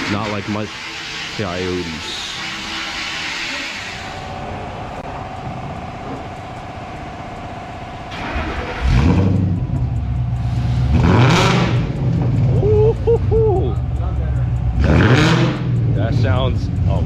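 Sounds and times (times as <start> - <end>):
loud deep car exhaust: 4.0 - 17.0
car engine cranking: 5.0 - 17.0.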